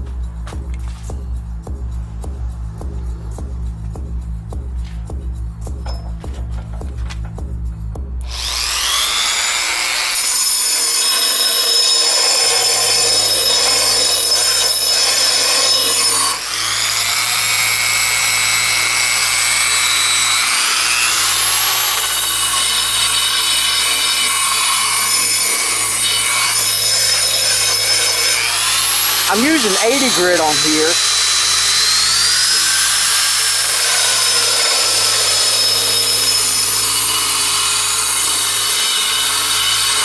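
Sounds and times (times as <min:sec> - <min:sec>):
background music: 0:00.0 - 0:08.3, 0:29.2 - 0:31.0
power sander whining: 0:08.2 - 0:10.4, 0:15.9 - 0:24.1, 0:27.6 - 0:33.9.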